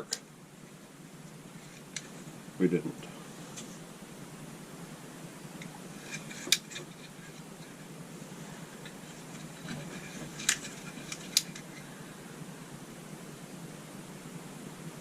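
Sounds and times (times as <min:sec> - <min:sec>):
light handling noises: 0:05.6 - 0:11.9.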